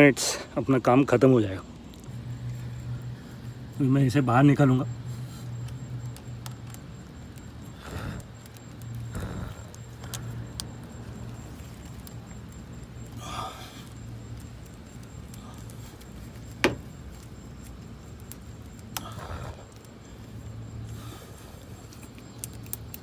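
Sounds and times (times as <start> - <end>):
steady low hum: 0.0 - 23.0
handling and rubbing noises: 13.9 - 18.9.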